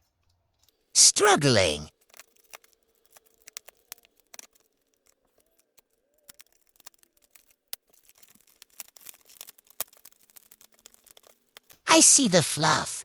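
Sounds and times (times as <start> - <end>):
packaging clicks and crinkles: 1.9 - 11.8.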